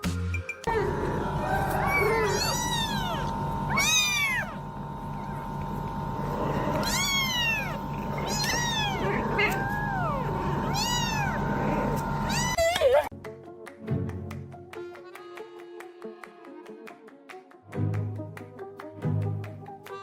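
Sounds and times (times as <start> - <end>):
cat meowing: 1.4 - 5.4, 6.6 - 12.8.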